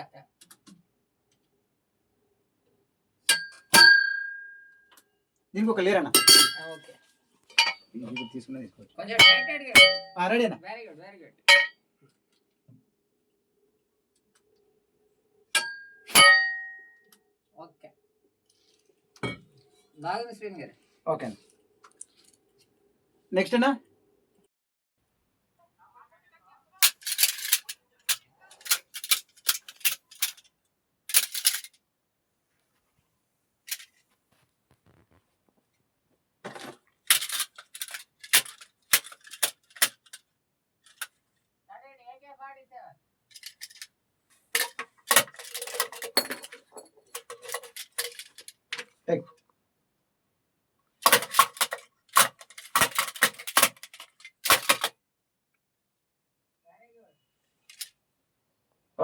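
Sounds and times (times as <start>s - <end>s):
props clattering: 6.2s - 8.4s, 9.1s - 10.2s, 11.5s - 11.7s, 44.6s - 48.9s, 51.0s - 54.9s
small hard objects clicking: 51.0s - 54.9s.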